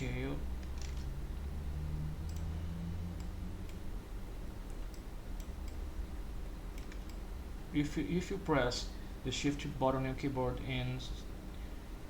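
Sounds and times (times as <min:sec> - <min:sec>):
steady low hum: 0:00.0 - 0:12.0
computer mouse or keyboard clicks: 0:00.6 - 0:01.1, 0:02.2 - 0:02.5, 0:06.8 - 0:07.2.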